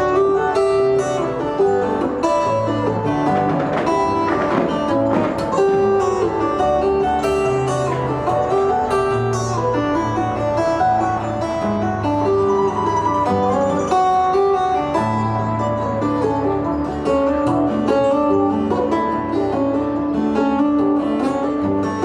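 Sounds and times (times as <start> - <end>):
acoustic guitar playing: 0.0 - 22.0
quick guitar strums: 0.0 - 22.0.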